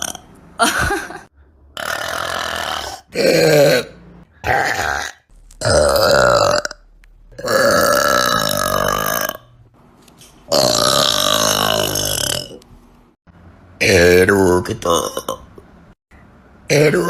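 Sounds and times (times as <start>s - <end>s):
person belching loudly: 1.8s - 9.5s, 10.5s - 12.6s.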